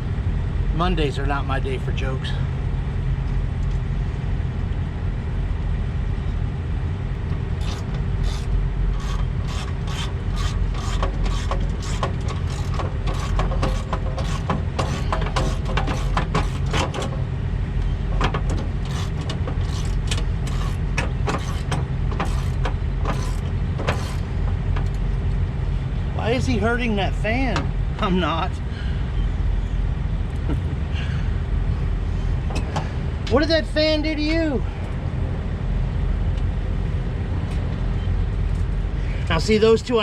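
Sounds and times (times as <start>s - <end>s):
low diesel engine rumble: 0.0s - 40.0s
ratchet wrench clicking: 7.6s - 17.0s, 18.8s - 20.8s, 21.4s - 24.2s.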